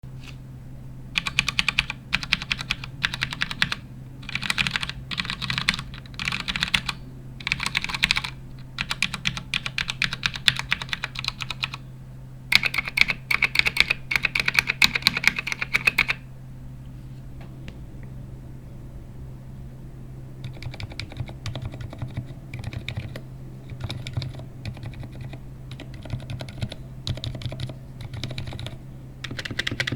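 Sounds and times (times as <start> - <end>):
keyboard typing: 1.2 - 11.8, 12.5 - 16.2, 20.4 - 29.9.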